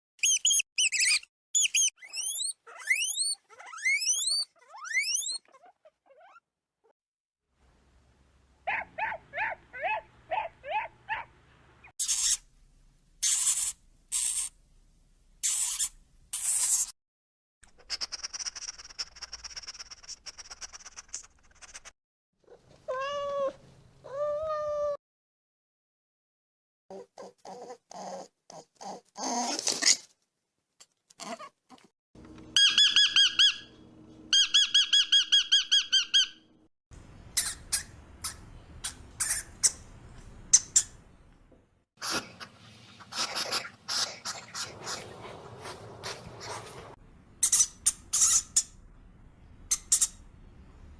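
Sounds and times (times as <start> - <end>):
animal chirping trills: 0.2 - 6.4, 32.6 - 33.7, 34.3 - 36.4
animal squeaks: 0.2 - 6.5, 11.9 - 12.5, 13.2 - 14.5, 15.4 - 16.9, 17.8 - 21.9, 37.4 - 39.8, 47.4 - 48.8, 49.7 - 50.2
animal hissing: 13.2 - 14.6
dog whimpering: 26.9 - 29.6.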